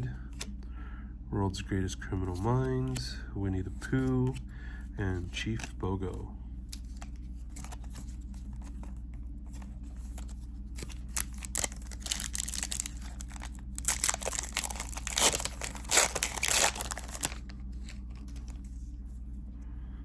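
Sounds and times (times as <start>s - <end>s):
wrapper tearing and crinkling: 10.2s - 18.6s.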